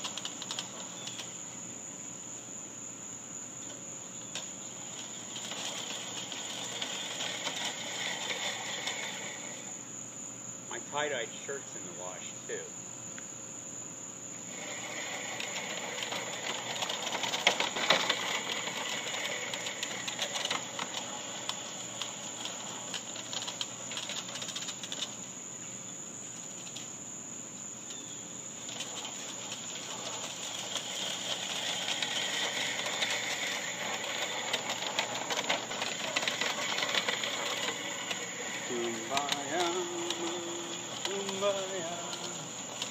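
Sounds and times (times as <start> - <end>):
push reel mower cutting grass: 0.0 - 1.6, 3.7 - 9.8, 14.4 - 25.4, 27.9 - 42.9.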